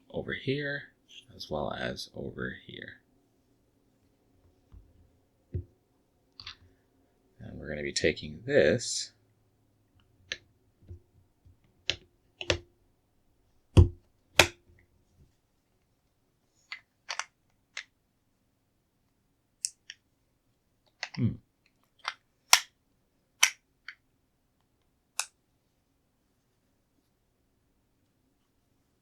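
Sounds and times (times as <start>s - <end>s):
plastic bricks clicking: 16.7s - 17.9s, 20.9s - 21.2s, 21.9s - 22.7s, 23.4s - 24.0s.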